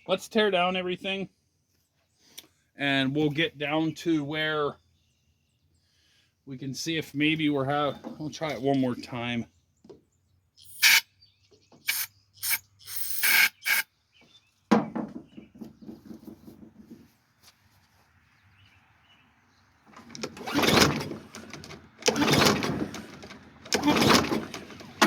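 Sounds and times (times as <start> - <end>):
engine turning over: 19.9 - 25.0
mower recoil starter pulled: 19.9 - 25.0.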